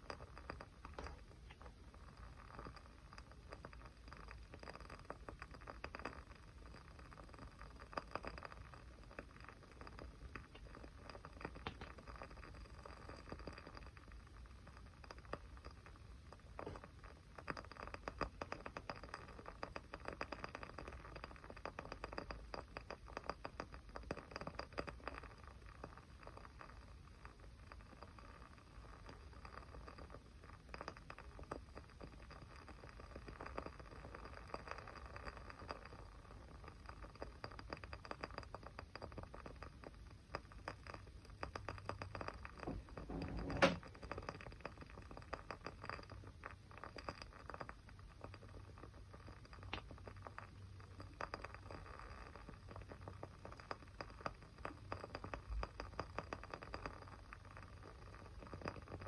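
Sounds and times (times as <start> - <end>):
small fire crackling: 0.0 - 59.0.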